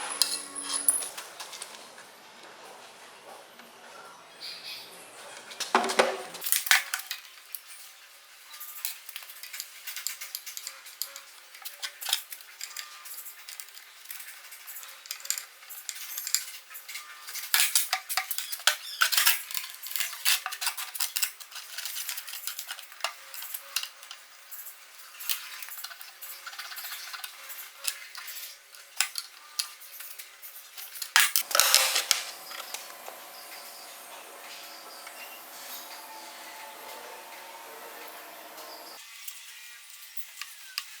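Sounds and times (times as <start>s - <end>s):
metal parts clinking: 0.0s - 1.7s, 31.0s - 34.1s.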